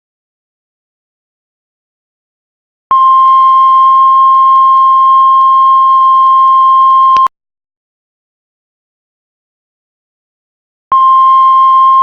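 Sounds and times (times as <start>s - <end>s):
heart monitor flatline beep: 2.9s - 7.3s, 10.9s - 12.0s.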